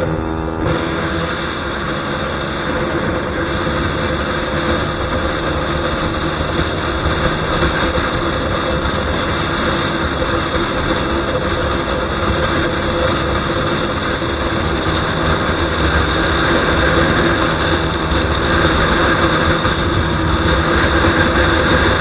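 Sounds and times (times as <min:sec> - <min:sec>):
motorcycle engine running: 0:00.0 - 0:14.7
wind noise on microphone: 0:00.0 - 0:22.0.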